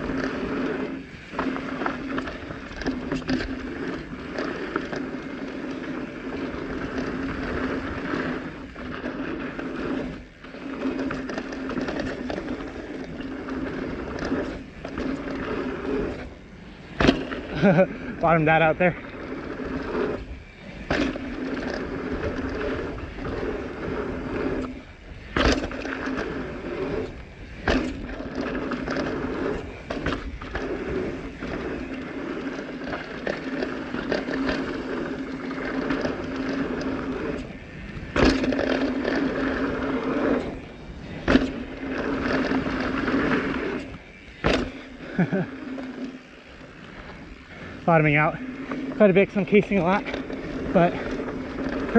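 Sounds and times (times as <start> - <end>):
bike tyres rolling over dirt: 0.0 - 51.9
steady buzz from bike: 0.0 - 51.9.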